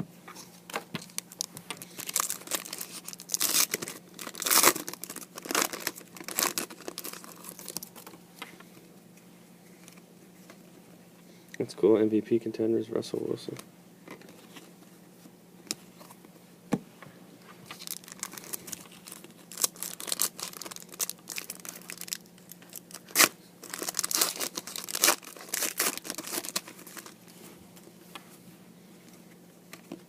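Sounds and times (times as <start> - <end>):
wrapper crinkling and tearing: 1.0 - 8.2, 17.7 - 27.3.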